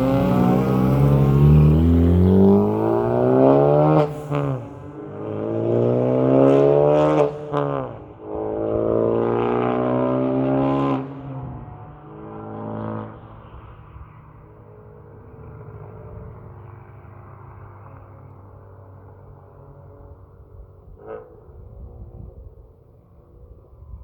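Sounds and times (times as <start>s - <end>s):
car engine revving and idling: 0.0s - 12.2s.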